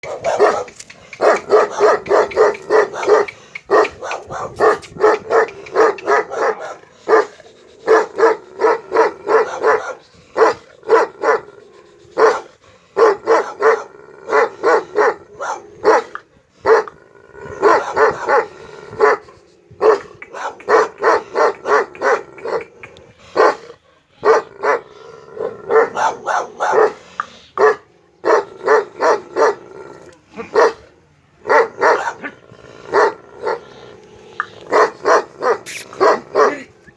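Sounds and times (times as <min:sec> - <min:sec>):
dog barking: 0:00.0 - 0:11.5, 0:12.2 - 0:16.1, 0:17.6 - 0:19.2, 0:19.8 - 0:22.7, 0:23.4 - 0:24.9, 0:25.7 - 0:27.0, 0:27.6 - 0:29.6, 0:30.5 - 0:30.8, 0:31.4 - 0:32.3, 0:34.7 - 0:36.7.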